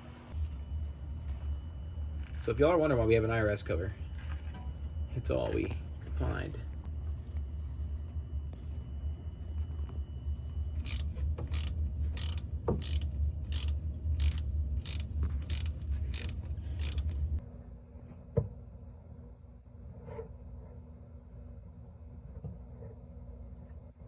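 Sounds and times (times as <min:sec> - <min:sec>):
steady low hum: 0:00.0 - 0:17.4
ratchet wrench cranking: 0:10.8 - 0:17.4.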